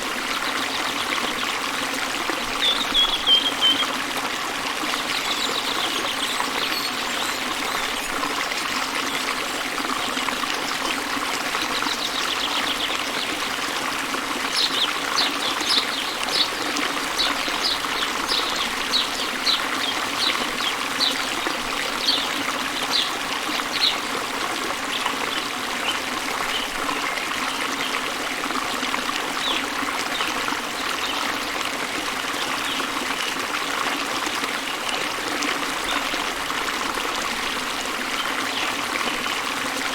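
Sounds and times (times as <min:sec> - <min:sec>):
stream running water: 0:00.0 - 0:39.9
bird chirping: 0:02.6 - 0:03.9.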